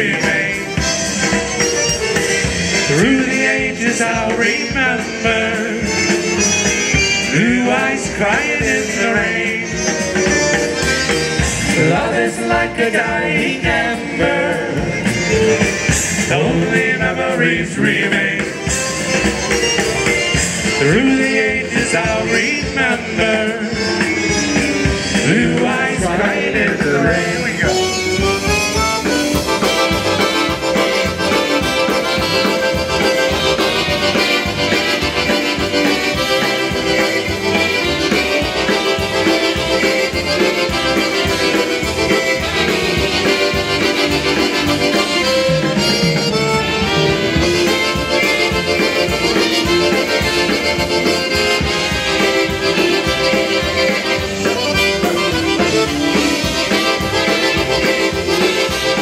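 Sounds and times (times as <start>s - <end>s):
accordion: 0.0s - 59.0s
polka band playing: 0.0s - 59.0s.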